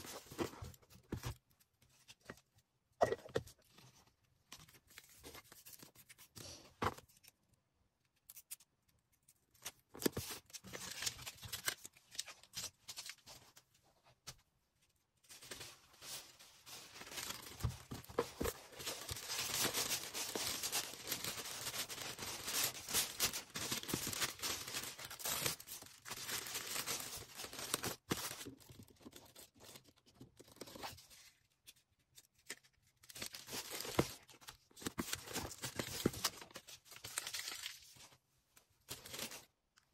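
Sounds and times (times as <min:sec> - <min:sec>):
plastic wrapping crinkling and rustling: 0:15.2 - 0:29.9.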